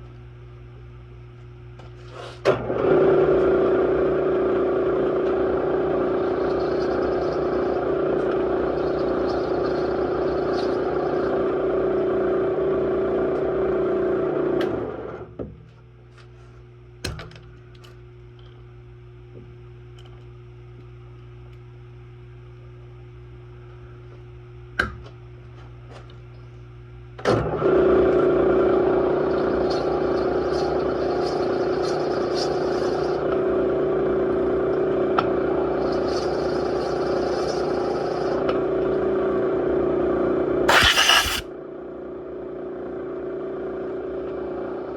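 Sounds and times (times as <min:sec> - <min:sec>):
sharp click: 0:40.7 - 0:41.4
metal cutting scraping: 0:40.7 - 0:41.5
power tool motor running: 0:40.7 - 0:41.5.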